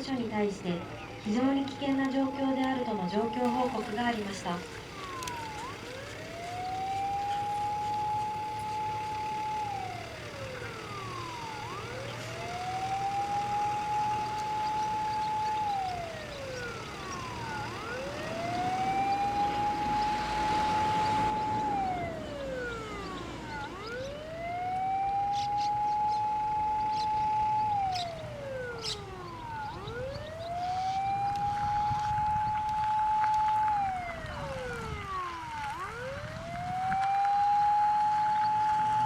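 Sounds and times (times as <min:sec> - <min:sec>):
fainter second siren wailing: 0:00.0 - 0:39.0
fire engine siren wailing: 0:00.0 - 0:39.0.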